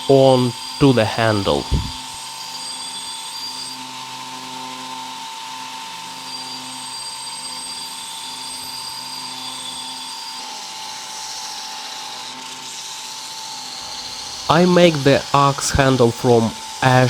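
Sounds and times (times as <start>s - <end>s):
electric grinder whining: 13.6s - 15.0s.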